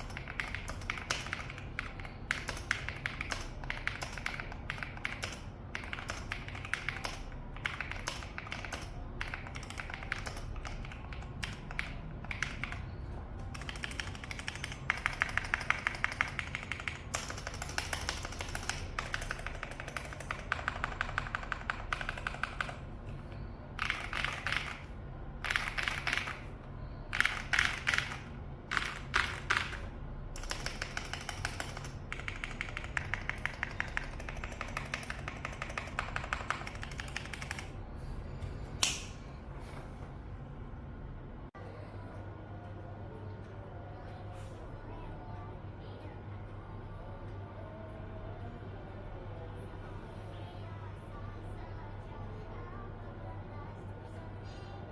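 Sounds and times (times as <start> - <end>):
mechanical keyboard typing: 0.0 - 12.8, 13.4 - 26.5, 27.1 - 37.8.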